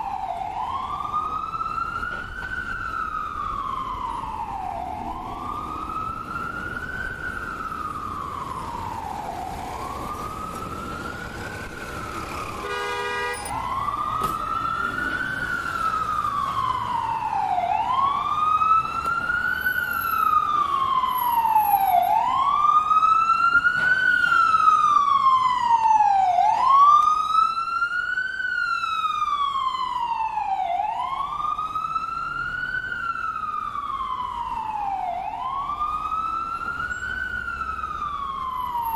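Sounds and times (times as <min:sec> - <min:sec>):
ambulance siren wailing: 0:00.0 - 0:38.9
horn-like tone: 0:12.6 - 0:13.6.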